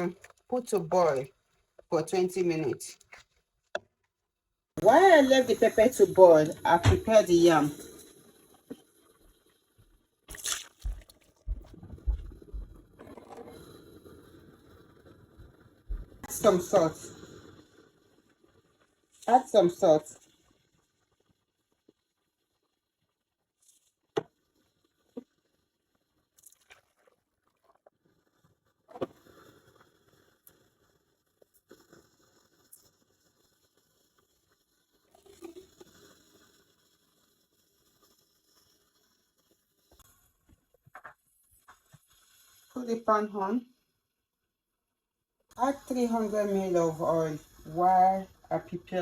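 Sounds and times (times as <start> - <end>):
low steady hiss: 45.5 - 49.0.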